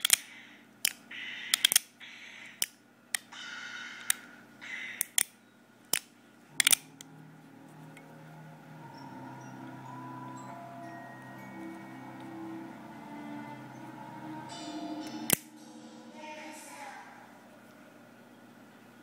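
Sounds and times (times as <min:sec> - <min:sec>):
sharp mechanical clicks: 0:00.0 - 0:03.3, 0:04.0 - 0:06.9
faint steady tones: 0:00.0 - 0:19.0.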